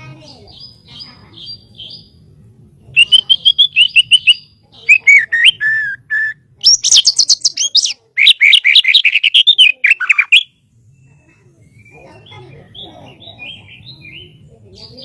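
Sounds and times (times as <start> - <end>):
bird singing varied whistled song: 3.0 - 14.4.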